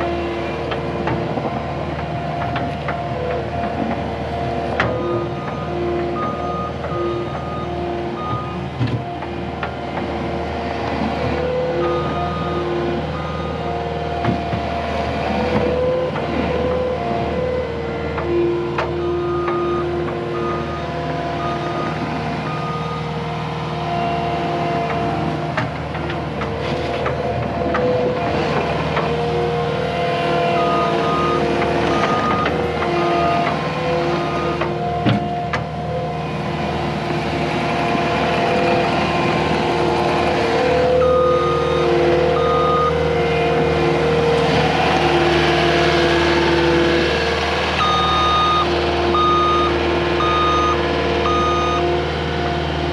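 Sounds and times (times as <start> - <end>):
skid steer loader engine: 0.0 - 52.9
reverse alarm beeping: 40.9 - 43.0, 47.8 - 51.9.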